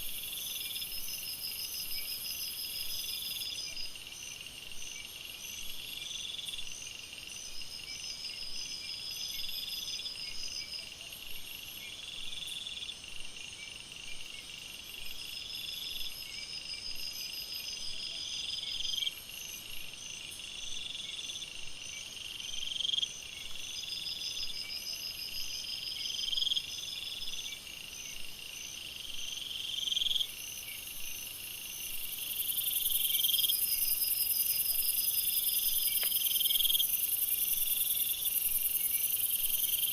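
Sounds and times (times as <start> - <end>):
insects chorus: 0.0 - 39.9
repeating insect call: 0.0 - 39.9
high insect trill: 23.1 - 39.9.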